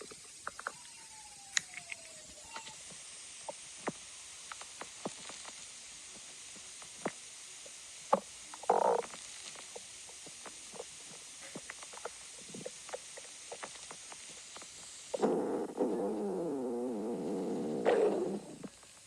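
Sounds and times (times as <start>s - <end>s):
faint steady hiss: 0.0s - 19.0s
stomach growling: 6.4s - 19.0s.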